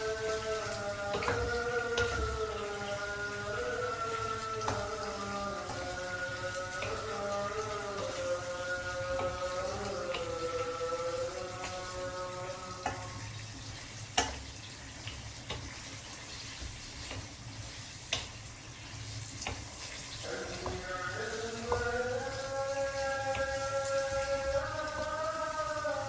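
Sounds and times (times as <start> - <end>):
soft background music: 0.0 - 13.9
steady kitchen hiss: 0.0 - 26.0.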